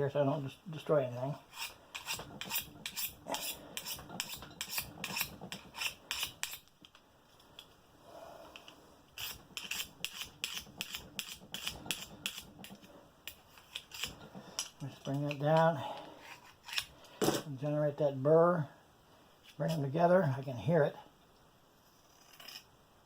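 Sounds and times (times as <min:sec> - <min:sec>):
scissor blade rasping on scissors: 0:01.6 - 0:06.6, 0:09.2 - 0:14.2.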